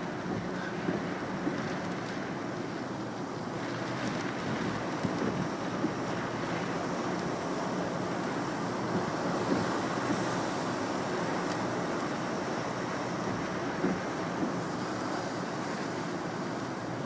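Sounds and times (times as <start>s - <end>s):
wind buffeting microphone: 0.0s - 11.9s.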